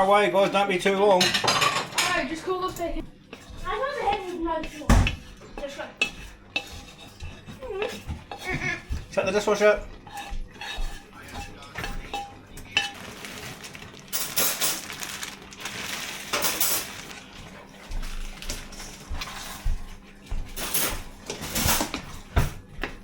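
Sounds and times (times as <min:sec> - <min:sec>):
pots and pans knocking: 0:01.2 - 0:02.2, 0:03.6 - 0:15.2.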